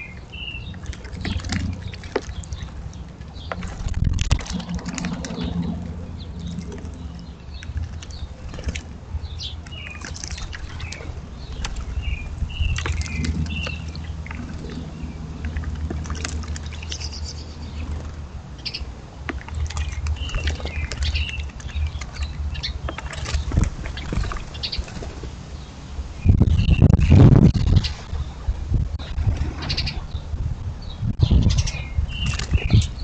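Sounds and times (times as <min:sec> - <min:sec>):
bird chirps: 0:00.0 - 0:02.7, 0:04.5 - 0:15.6
birds splashing in water: 0:00.0 - 0:30.3, 0:31.3 - 0:33.0
low steady hum: 0:00.0 - 0:33.0
wings flapping: 0:22.9 - 0:25.4.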